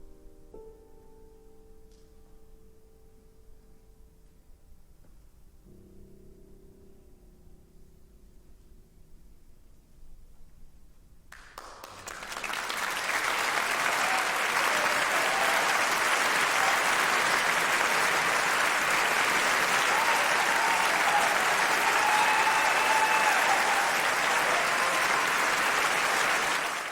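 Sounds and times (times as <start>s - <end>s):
audience applause: 11.4s - 26.9s.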